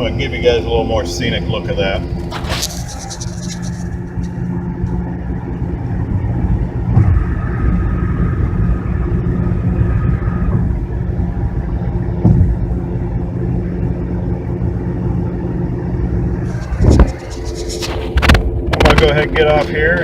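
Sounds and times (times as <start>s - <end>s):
car engine and road rumble: 0.0s - 20.0s.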